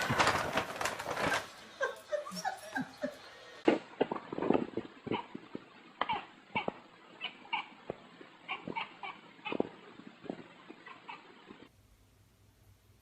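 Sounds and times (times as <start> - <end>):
scattered light tapping: 3.7 - 11.7
dog whimpering and yipping: 6.1 - 7.8, 8.5 - 9.7.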